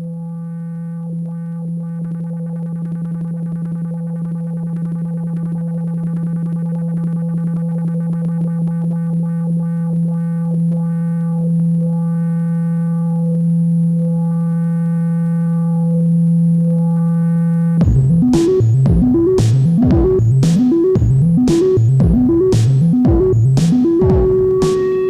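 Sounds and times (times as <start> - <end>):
pulsing synthesizer notes: 17.8 - 25.0
synthesizer low drone: 17.8 - 25.0.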